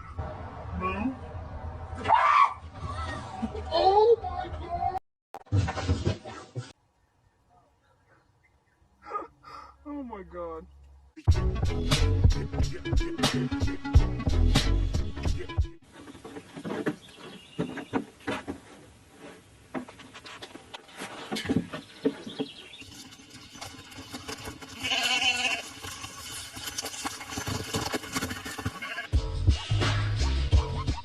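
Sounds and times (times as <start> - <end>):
knocks and scuffles: 5.4 - 6.8, 15.8 - 22.7
goat bleating: 24.8 - 25.7, 28.7 - 29.1.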